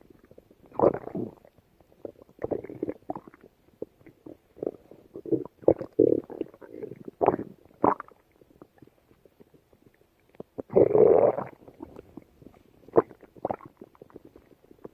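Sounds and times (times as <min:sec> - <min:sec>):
stomach growling: 0:00.0 - 0:14.9.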